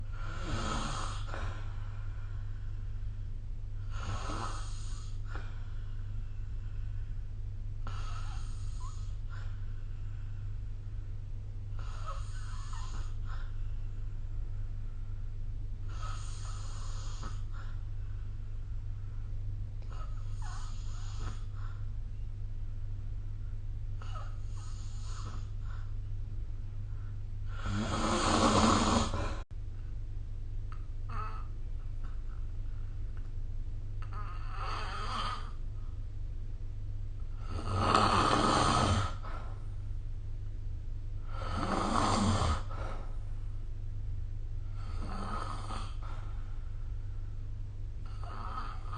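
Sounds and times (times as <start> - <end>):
faint breaths: 0.0 - 22.3, 23.2 - 26.2, 38.3 - 39.9, 41.1 - 43.7, 44.6 - 48.9
steady low hum: 0.0 - 48.9
person snoring: 0.1 - 1.8, 3.8 - 5.6, 7.8 - 9.6, 11.7 - 13.6, 15.9 - 17.8, 19.8 - 21.8, 24.0 - 25.9, 27.4 - 29.4, 34.0 - 35.6, 37.3 - 39.6, 41.2 - 43.2, 48.0 - 48.9.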